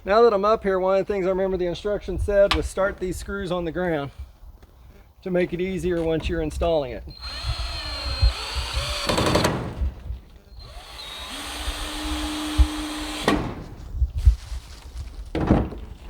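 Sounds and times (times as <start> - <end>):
power drill driving screws: 7.1 - 13.7.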